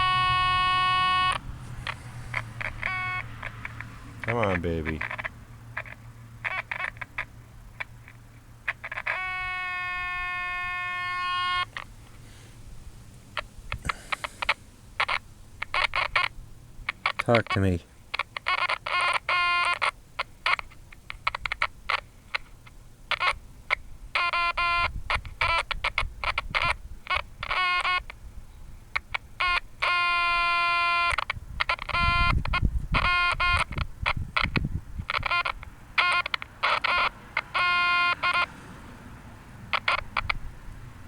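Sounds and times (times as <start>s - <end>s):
buzzing radio tone: 0.0s - 3.5s, 4.2s - 6.8s
low wind rumble: 31.2s - 36.0s.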